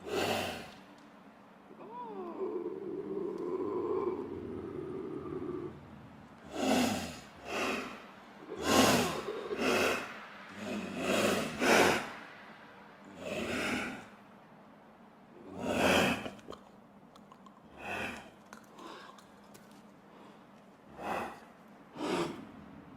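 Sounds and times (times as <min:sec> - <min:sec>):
lynx harsh breathy calls: 0:01.7 - 0:14.2, 0:17.7 - 0:19.2, 0:20.2 - 0:22.8.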